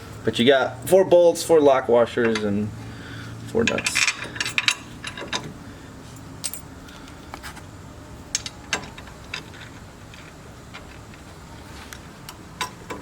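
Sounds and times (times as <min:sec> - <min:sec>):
metal bolts and nuts clinking: 0:02.2 - 0:02.6, 0:03.6 - 0:05.6, 0:06.4 - 0:06.7, 0:08.3 - 0:11.2, 0:12.3 - 0:13.0.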